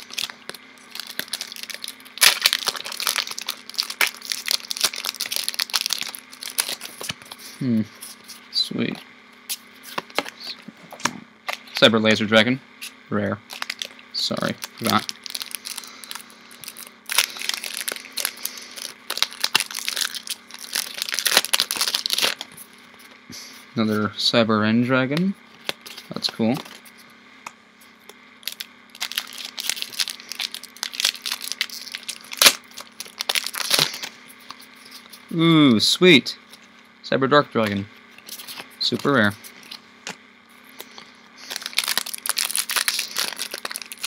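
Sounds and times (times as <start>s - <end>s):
foil wrapper crinkling and tearing: 0.0s - 7.4s, 13.5s - 22.6s, 28.4s - 35.2s, 40.7s - 44.0s.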